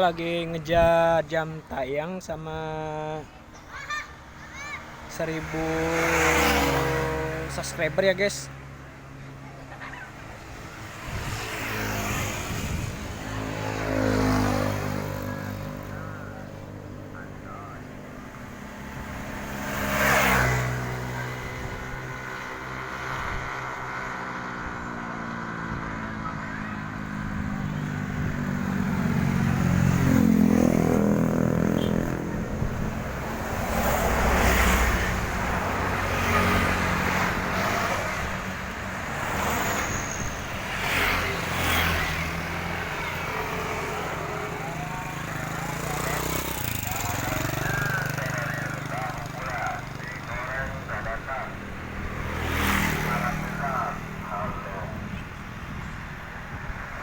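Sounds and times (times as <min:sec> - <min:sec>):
vehicles passing by: 0:00.0 - 0:57.0
continuous engine drone: 0:34.8 - 0:57.0.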